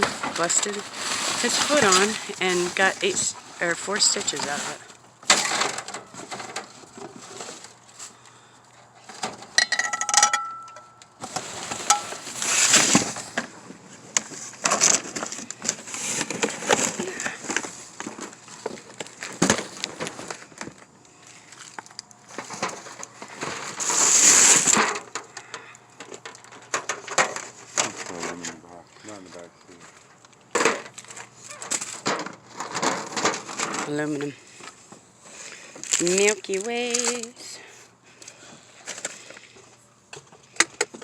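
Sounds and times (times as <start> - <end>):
rustling of trash bags: 0.0 - 9.6, 11.2 - 39.9
ringing clink of metal or glass: 9.6 - 11.0.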